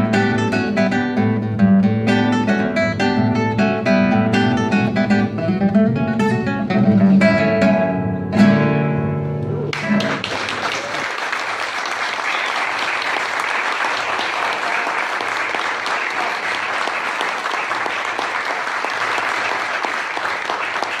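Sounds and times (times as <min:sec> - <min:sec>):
acoustic guitar playing: 0:00.0 - 0:10.2
audience applauding: 0:09.7 - 0:21.0.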